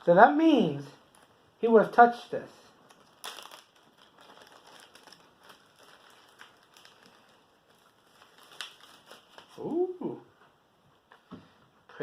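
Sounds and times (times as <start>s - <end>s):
paper crinkling and rustling: 2.8s - 9.6s.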